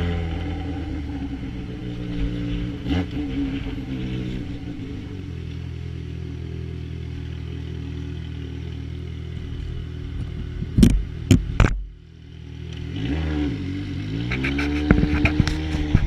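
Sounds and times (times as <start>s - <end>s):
motorcycle engine running: 0.0s - 16.0s
exhaust cracks: 9.4s - 12.0s, 14.2s - 16.0s.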